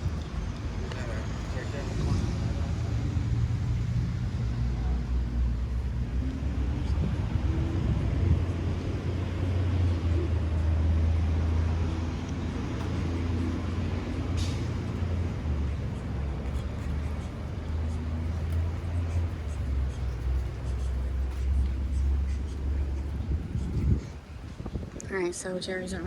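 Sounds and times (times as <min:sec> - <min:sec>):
motor vehicle running: 0:00.0 - 0:26.0.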